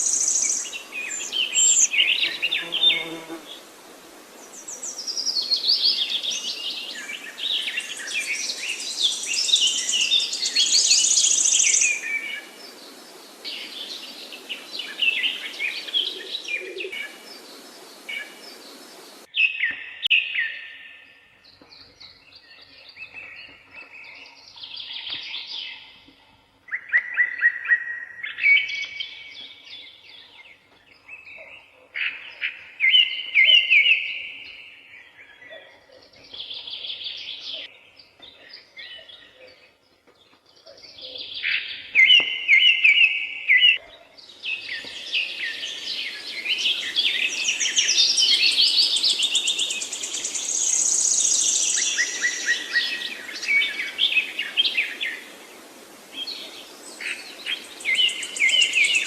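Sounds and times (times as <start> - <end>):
steady background hiss: 0.0 - 19.3, 44.2 - 59.0
songbirds singing: 0.0 - 59.0.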